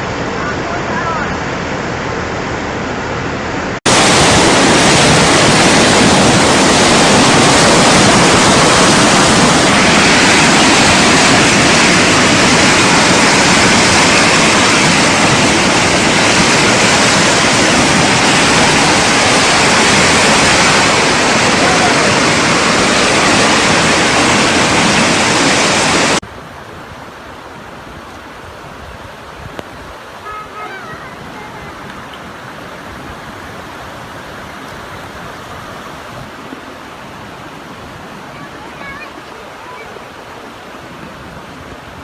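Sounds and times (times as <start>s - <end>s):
floodwater roaring: 0.0s - 42.0s.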